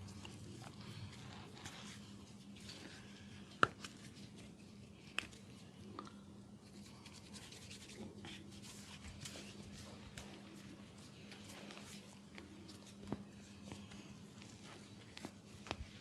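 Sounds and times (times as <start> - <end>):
hands rubbing oiled skin: 6.6 - 16.0.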